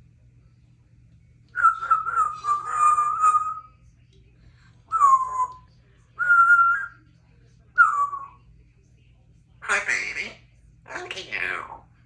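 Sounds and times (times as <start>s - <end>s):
parrot whistling: 1.6s - 3.7s, 4.9s - 5.6s, 6.2s - 6.9s.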